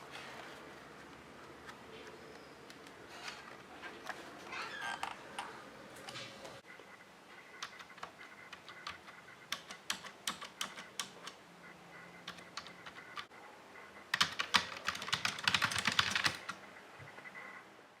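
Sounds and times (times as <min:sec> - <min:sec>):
keyboard typing: 0:07.6 - 0:11.4, 0:12.2 - 0:13.3, 0:14.1 - 0:16.6.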